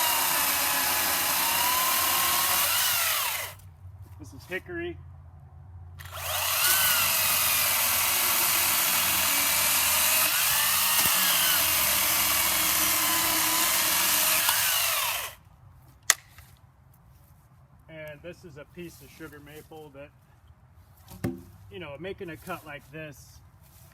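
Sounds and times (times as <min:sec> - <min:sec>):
battery chainsaw cutting wood: 0:00.0 - 0:03.6, 0:06.0 - 0:15.4.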